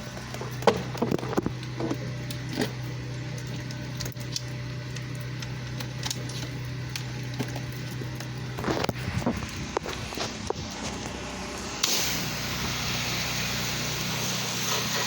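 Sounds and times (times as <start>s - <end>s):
pressure washer humming: 0.0s - 15.0s
clicks and knocks of fittings: 0.1s - 2.8s.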